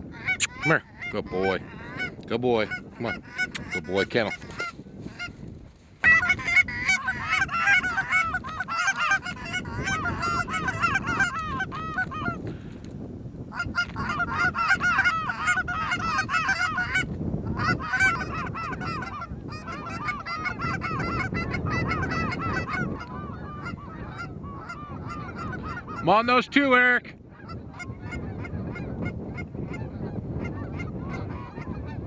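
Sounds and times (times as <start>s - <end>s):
goose honks and clucks: 0.1s - 5.4s, 6.0s - 12.4s, 13.5s - 26.4s, 27.3s - 32.0s.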